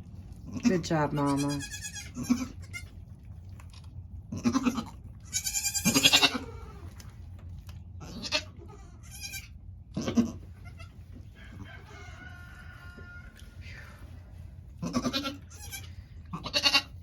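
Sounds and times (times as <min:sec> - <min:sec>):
goats bleating: 0:00.5 - 0:02.9, 0:04.3 - 0:07.0, 0:08.0 - 0:11.0, 0:14.8 - 0:17.0.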